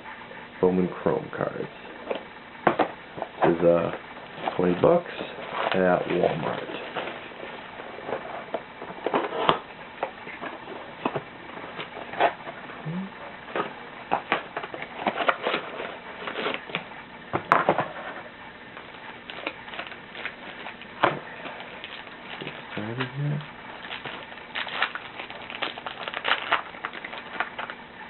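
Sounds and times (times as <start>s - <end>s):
card pack wrappers crinkling: 18.7s - 27.8s.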